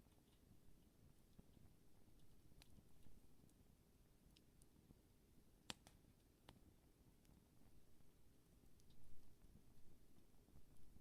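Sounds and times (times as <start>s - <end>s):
campfire crackling and popping: 5.6s - 6.6s.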